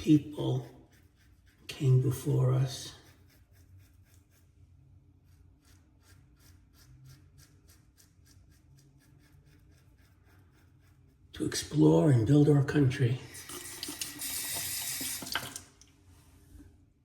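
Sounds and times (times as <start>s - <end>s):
razor scratching stubble: 0.0s - 12.0s.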